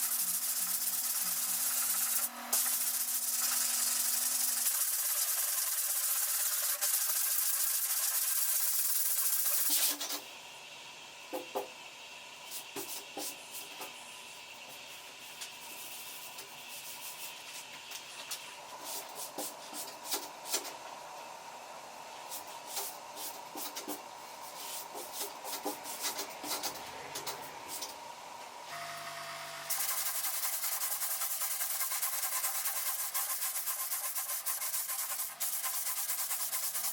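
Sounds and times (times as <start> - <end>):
sandpaper rubbing: 0.0 - 10.1, 29.7 - 36.9.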